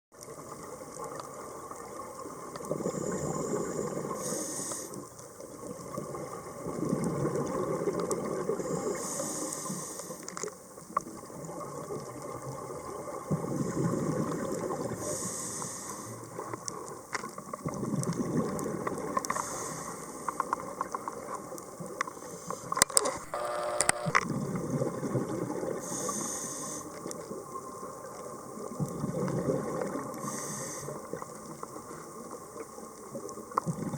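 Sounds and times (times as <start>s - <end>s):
diver breathing through regulator: 2.9s - 5.0s, 8.6s - 10.3s, 15.0s - 16.2s, 19.3s - 20.3s, 25.8s - 27.0s, 30.2s - 31.0s
exhaled bubbles rushing: 5.9s - 8.9s, 11.3s - 15.0s, 17.6s - 19.3s, 24.2s - 25.8s, 27.4s - 30.2s
clicks: 22.7s - 24.3s
short buzzing tone: 23.0s - 24.3s.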